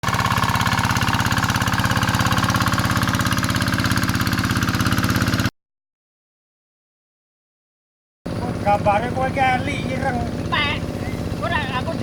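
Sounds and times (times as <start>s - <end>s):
diesel engine running: 0.0s - 5.5s, 8.3s - 12.0s.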